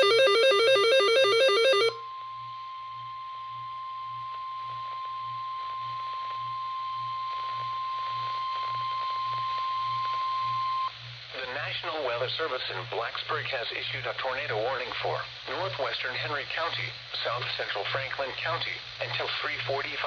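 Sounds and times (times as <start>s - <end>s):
steady high alarm tone: 0.0s - 10.9s.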